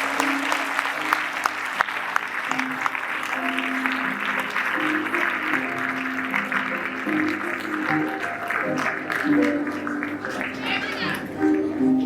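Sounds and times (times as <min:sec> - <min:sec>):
audience clapping: 0:00.0 - 0:12.0
music in held notes: 0:02.5 - 0:12.0.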